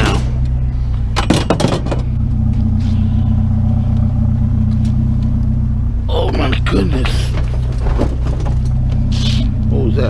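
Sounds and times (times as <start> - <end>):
vehicle engine idling: 0.0 - 10.0.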